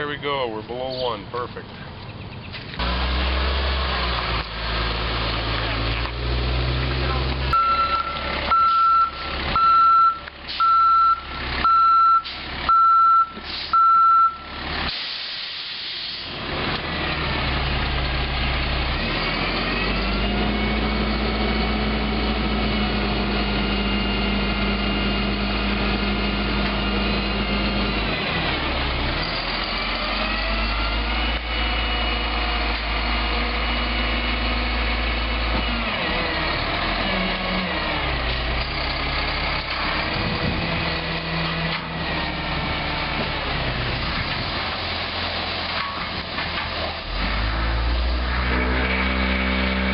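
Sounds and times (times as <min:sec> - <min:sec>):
heavy machine engine running: 0:02.8 - 0:15.0, 0:16.3 - 0:49.9
reversing alarm beeping: 0:07.5 - 0:14.6.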